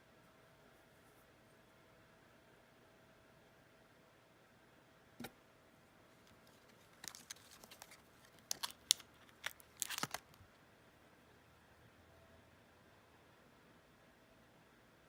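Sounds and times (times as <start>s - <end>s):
packaging crinkling and crackling: 6.2s - 10.4s.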